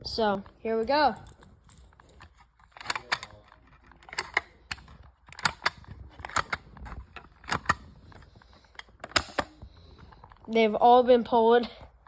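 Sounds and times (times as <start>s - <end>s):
fire alarm pull station clicks: 4.1s - 6.6s.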